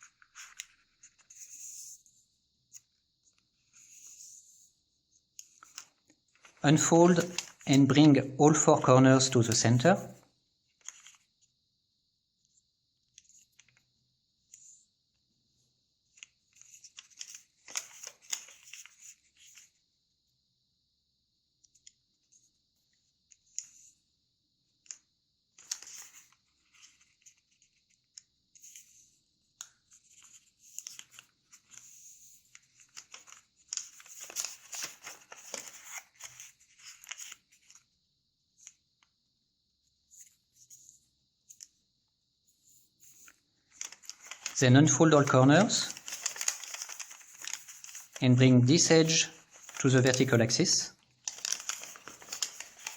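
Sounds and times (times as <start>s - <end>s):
paper rustling and crinkling: 0.0s - 1.6s, 5.4s - 10.2s, 10.8s - 11.2s, 16.5s - 19.7s, 25.6s - 27.8s, 29.9s - 37.8s, 43.0s - 52.9s
faint steady hiss: 0.0s - 24.2s, 24.8s - 52.9s.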